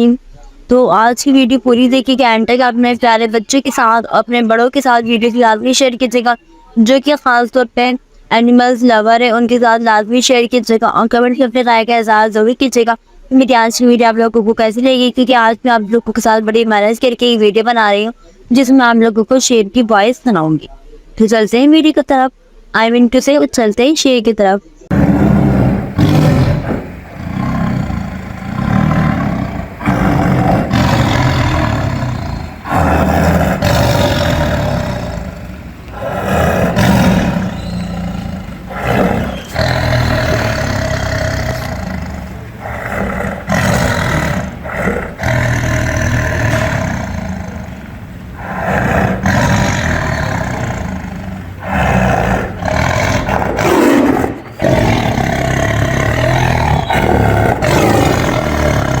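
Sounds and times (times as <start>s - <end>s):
lion roaring: 24.9s - 59.0s.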